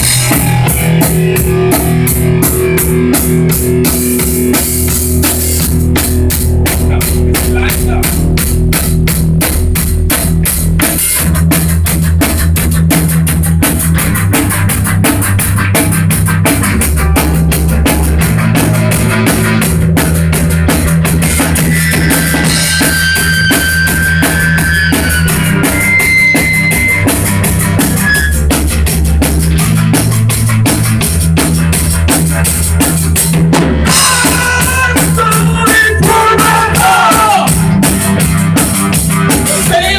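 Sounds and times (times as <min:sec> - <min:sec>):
bass line: 0:00.0 - 0:39.9
drum-kit beat: 0:00.0 - 0:39.9
high melodic lead line: 0:00.0 - 0:39.9.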